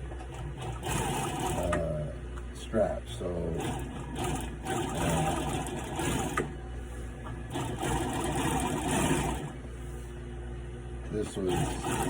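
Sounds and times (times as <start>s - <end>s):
sewing machine stitching webbing: 0.2s - 2.0s, 3.6s - 6.6s, 7.2s - 9.6s, 11.3s - 12.0s.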